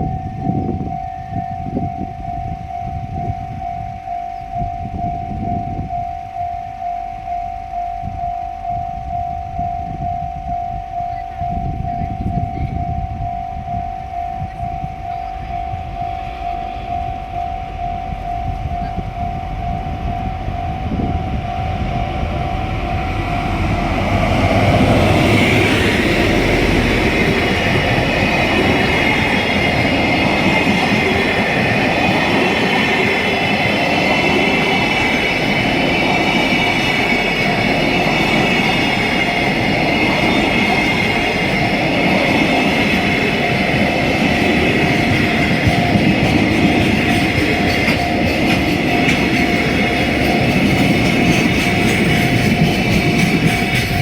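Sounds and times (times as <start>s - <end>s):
high ringing squeal: 0.0s - 54.0s
level crossing alarm: 0.0s - 54.0s
train wheels clattering over rails: 22.5s - 54.0s.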